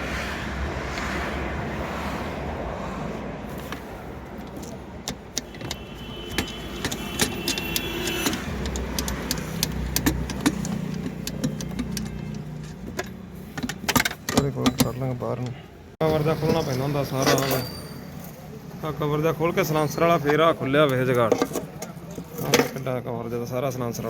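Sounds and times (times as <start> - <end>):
metal tools clicking and clinking: 4.4 - 15.6, 16.4 - 18.4
faint metallic ringing: 16.4 - 18.6.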